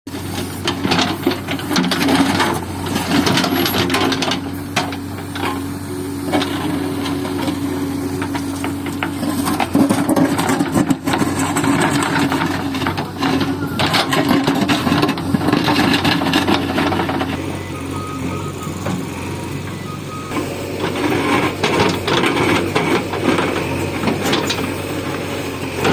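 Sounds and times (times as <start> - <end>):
bucket scraping asphalt: 0.1 - 19.6
diesel engine droning: 0.1 - 25.9.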